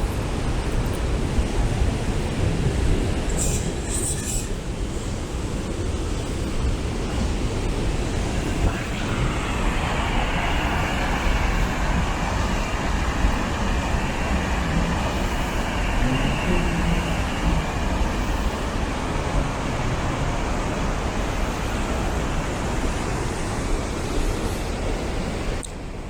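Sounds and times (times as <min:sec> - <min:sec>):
bright water hiss: 0:08.1 - 0:23.2.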